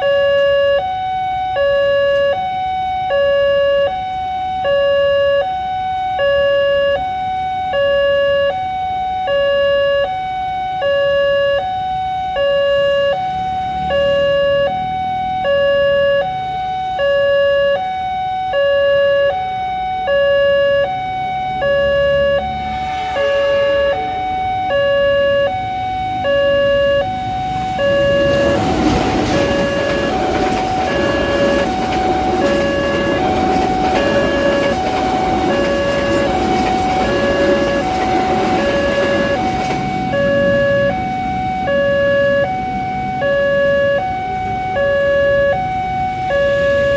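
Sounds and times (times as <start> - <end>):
level crossing warning alarm: 0.0 - 46.9
train rumbling and rattling: 22.0 - 46.9.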